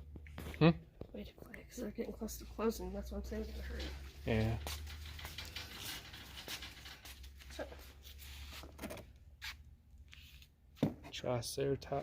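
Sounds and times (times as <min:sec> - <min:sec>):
rustling and clicking of handling: 0:03.3 - 0:09.2.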